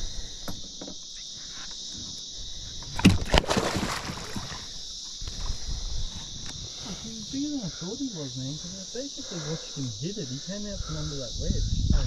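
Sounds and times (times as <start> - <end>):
high drone of insects: 0.0 - 12.0
water splash: 3.0 - 4.7.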